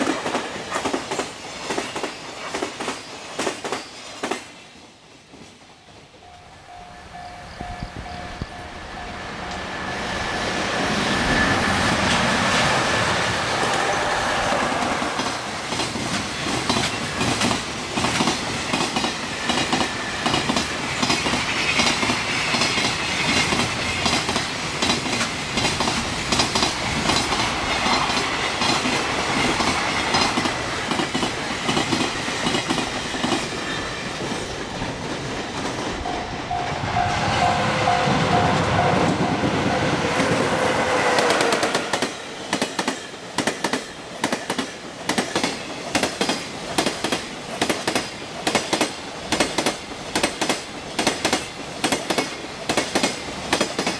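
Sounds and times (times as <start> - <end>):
train wheels clickety-clack: 0.0 - 53.9
short pulsing tone: 36.1 - 42.1.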